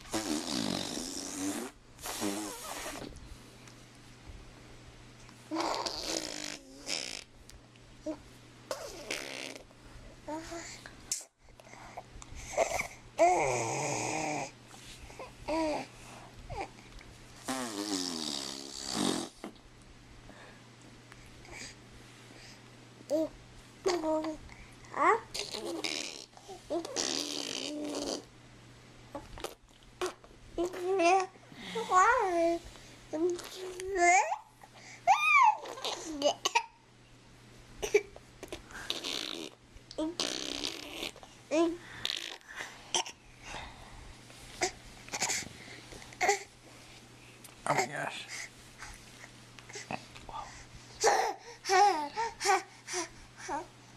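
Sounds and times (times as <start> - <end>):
child blowing raspberries: 0.0 - 3.1, 17.4 - 19.4, 38.6 - 42.6
child making vocal noises: 30.6 - 32.6
child squealing: 35.1 - 36.0.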